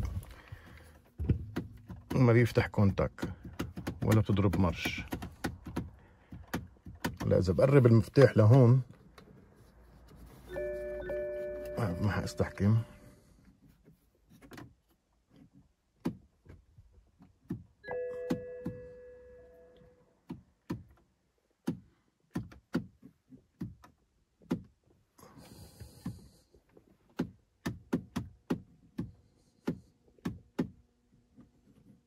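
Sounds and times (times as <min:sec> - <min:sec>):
car key clicks and knocks: 0:01.2 - 0:08.7, 0:27.1 - 0:30.8.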